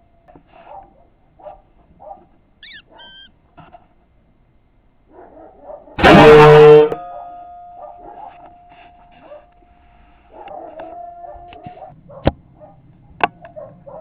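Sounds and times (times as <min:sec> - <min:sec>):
faint ringing tone: 0:06.9 - 0:10.0.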